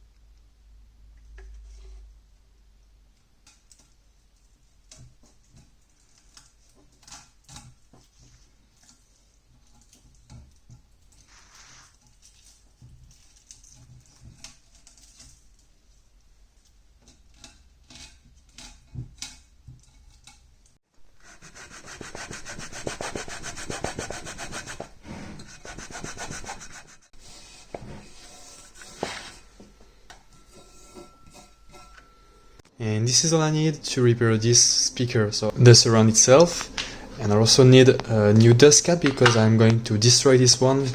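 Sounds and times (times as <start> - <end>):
fast rubbing strokes: 21.1 - 29.5.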